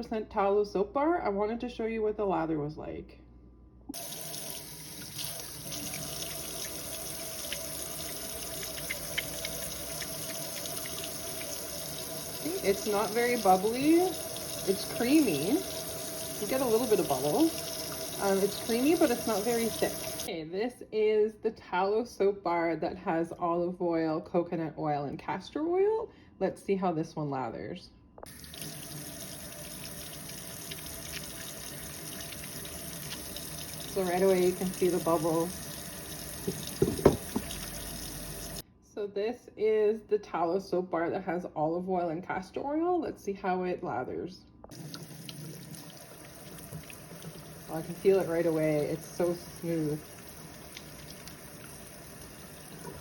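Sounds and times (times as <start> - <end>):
hands lathering soap: 4.0 - 20.3, 28.4 - 38.6, 44.7 - 53.0
small splashes: 4.0 - 20.3, 28.3 - 38.6, 44.7 - 53.0
tap running into sink: 4.0 - 20.3, 28.3 - 38.6, 44.7 - 48.6
small wet clicks: 7.5 - 11.1.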